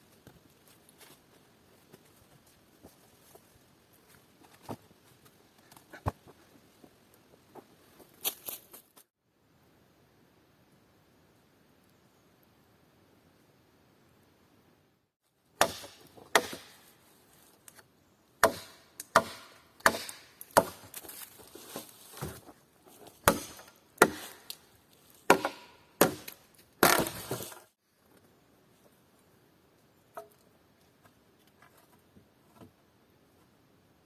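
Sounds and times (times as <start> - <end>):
axe chopping wood: 15.6 - 16.8, 18.4 - 21.1, 23.2 - 24.6, 25.3 - 27.6.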